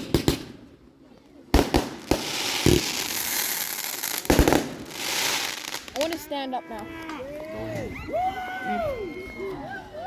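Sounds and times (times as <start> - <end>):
fireworks bangs: 1.6 - 6.2
fireworks crackling: 1.6 - 6.5.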